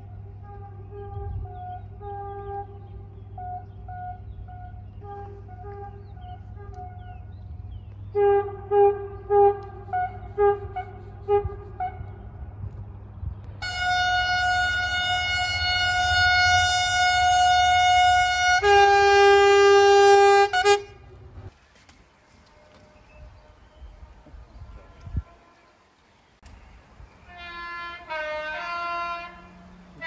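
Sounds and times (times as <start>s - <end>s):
train horn toots and blasts: 0.0s - 7.4s, 8.1s - 12.5s, 13.6s - 21.5s, 24.6s - 26.0s, 27.3s - 30.0s.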